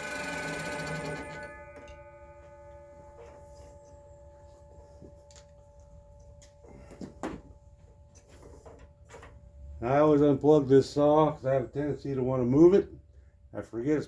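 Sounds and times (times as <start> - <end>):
faint ringing tones: 0.0 - 10.3
knocks and clatters of handling: 4.9 - 9.4.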